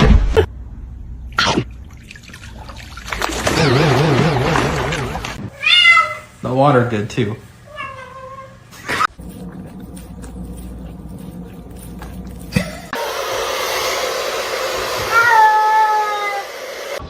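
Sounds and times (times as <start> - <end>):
cat meowing: 5.5 - 6.3, 7.7 - 9.1, 15.1 - 16.5
low hum: 9.1 - 13.0.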